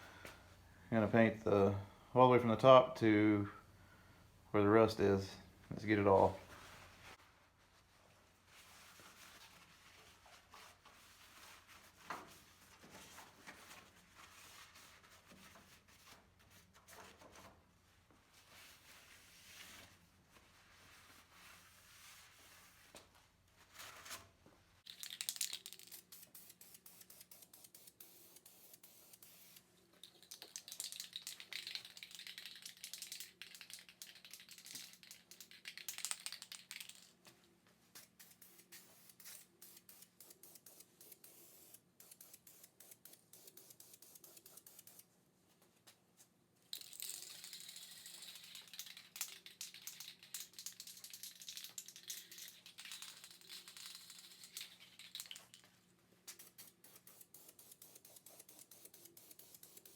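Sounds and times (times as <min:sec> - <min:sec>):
aerosol can spraying: 0:24.9 - 0:37.0, 0:37.9 - 0:45.0, 0:56.3 - 0:59.9.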